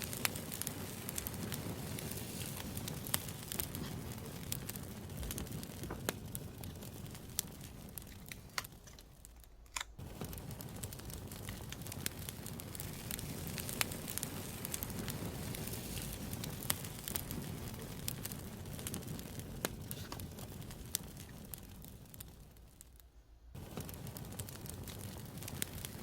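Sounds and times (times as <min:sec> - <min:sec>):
campfire crackling: 0:00.0 - 0:26.0
wood popping and snapping: 0:00.1 - 0:10.4.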